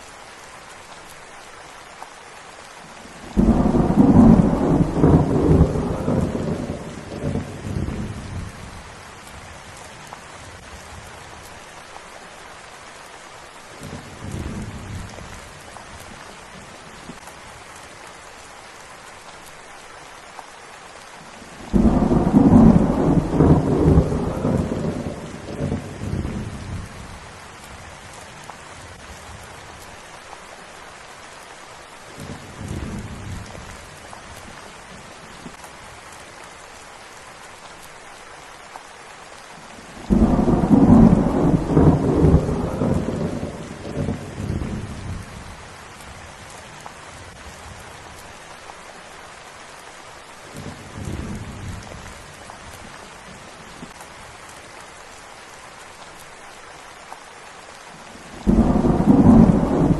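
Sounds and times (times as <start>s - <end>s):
steady rain: 0.0s - 59.9s
thunder rumbling: 3.3s - 8.8s, 21.6s - 27.2s, 40.0s - 45.6s, 58.3s - 59.9s
loud thunderclap: 3.4s - 8.0s, 21.7s - 26.4s, 40.1s - 45.0s, 58.4s - 59.9s.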